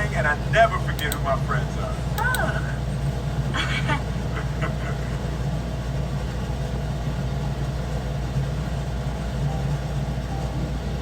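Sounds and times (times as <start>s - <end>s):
low rumbling hum: 0.0s - 11.0s.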